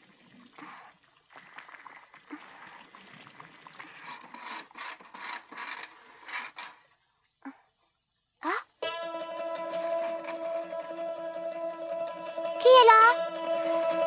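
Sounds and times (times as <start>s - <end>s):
scraping and rustling: 3.3s - 7.0s.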